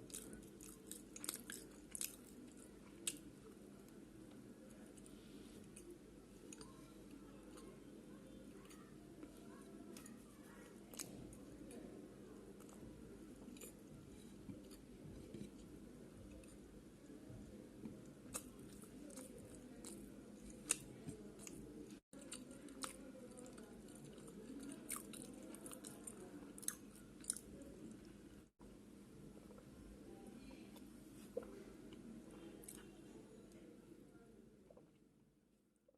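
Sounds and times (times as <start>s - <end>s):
chewing crunchy food: 0.0s - 7.8s, 8.5s - 16.7s, 17.4s - 28.3s
low steady hum: 0.0s - 35.9s.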